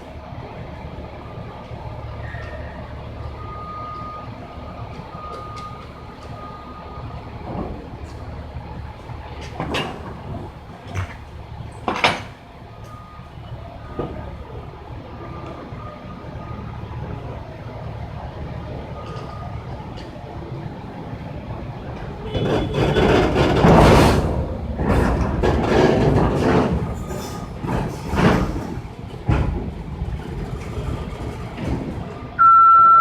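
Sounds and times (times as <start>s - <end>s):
truck engine running: 0.0s - 32.4s
reversing alarm beeping: 2.2s - 7.2s, 12.8s - 17.2s, 32.4s - 33.0s.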